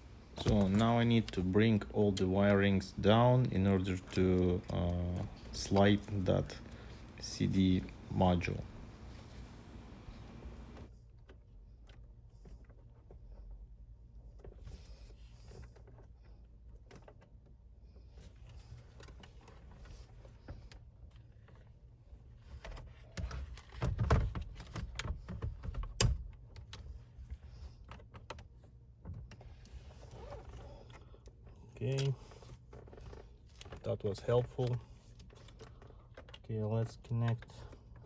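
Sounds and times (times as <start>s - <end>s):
clicks and rustling: 0.3s - 7.7s.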